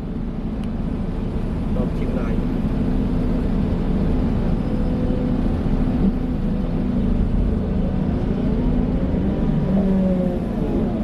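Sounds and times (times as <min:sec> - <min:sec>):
excavator diesel engine droning: 0:00.0 - 0:11.0.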